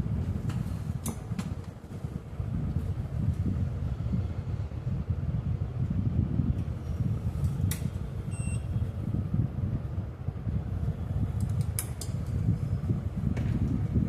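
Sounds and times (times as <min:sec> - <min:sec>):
fan air rumble on microphone: 0:00.0 - 0:14.0
short high beep: 0:08.3 - 0:08.7.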